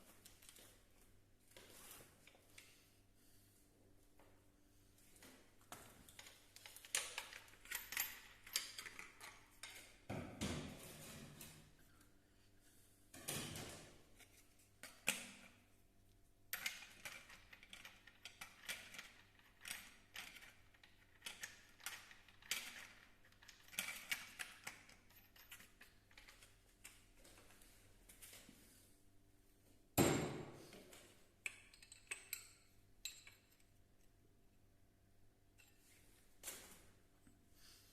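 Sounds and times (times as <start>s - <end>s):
metal tools clicking and tapping: 6.1s - 9.9s, 31.4s - 33.7s.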